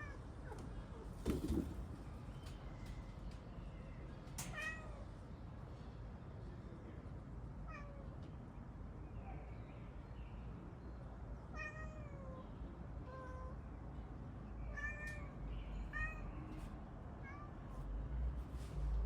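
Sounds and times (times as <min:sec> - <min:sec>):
cat meowing: 0:04.5 - 0:05.0, 0:11.5 - 0:12.4, 0:14.7 - 0:16.4, 0:17.2 - 0:17.8.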